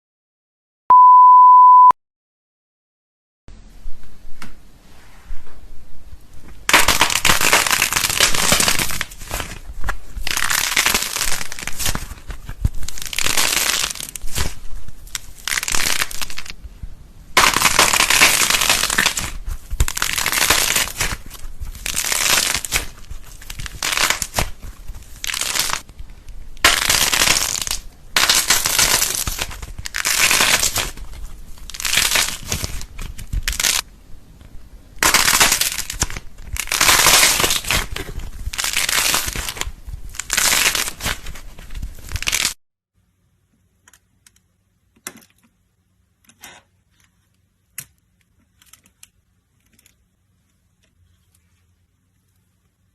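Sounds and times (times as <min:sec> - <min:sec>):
crunchy material crackling: 0:06.3 - 0:33.9, 0:35.0 - 0:42.6.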